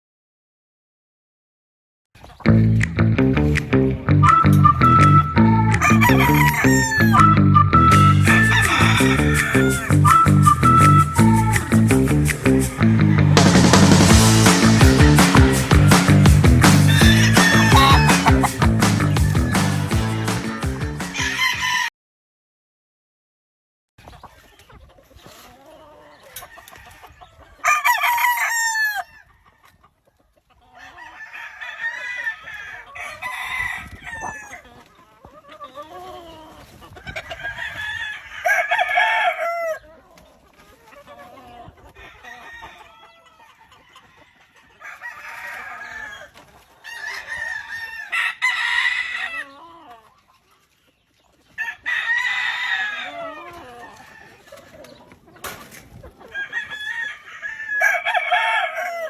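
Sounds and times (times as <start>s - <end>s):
roosters crowing: 4.2s - 21.9s, 25.7s - 29.7s, 30.6s - 40.1s, 41.0s - 50.1s, 51.5s - 54.8s, 55.5s - 59.0s.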